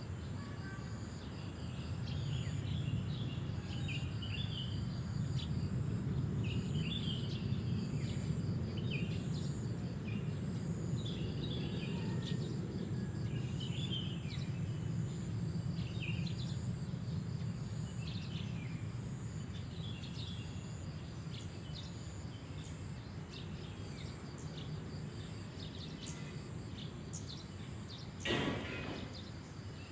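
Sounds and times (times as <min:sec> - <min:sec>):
crickets trilling: 0:00.0 - 0:29.9
short thump: 0:28.2 - 0:29.2.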